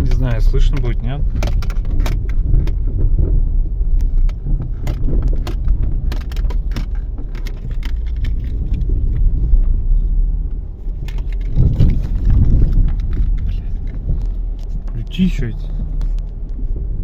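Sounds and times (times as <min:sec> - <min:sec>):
knocks and rattles from car body: 0:00.0 - 0:10.1, 0:10.9 - 0:15.0
road rumble inside car: 0:00.0 - 0:17.0.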